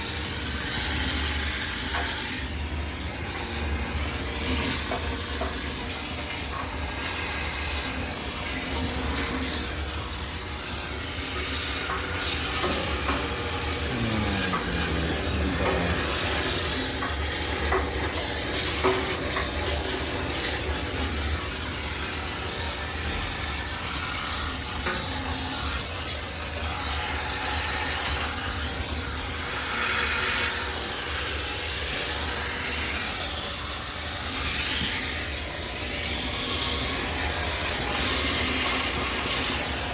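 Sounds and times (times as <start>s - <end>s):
steam cleaner hissing: 0.0s - 39.9s.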